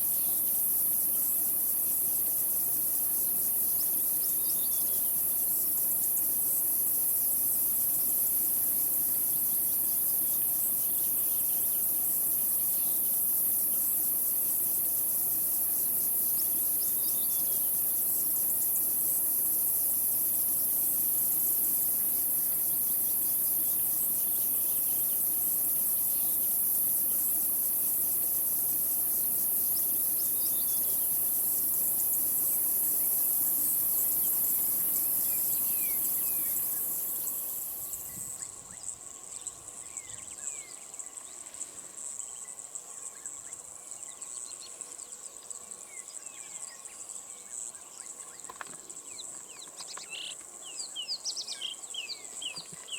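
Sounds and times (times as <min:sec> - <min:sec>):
insects shrilling: 0:00.0 - 0:39.0.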